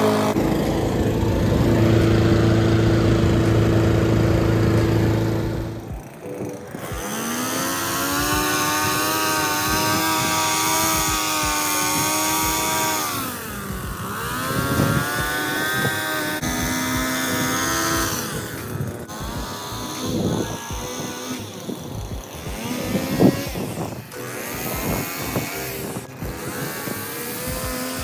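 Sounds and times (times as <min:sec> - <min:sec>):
small high-revving engine: 0:00.0 - 0:28.0.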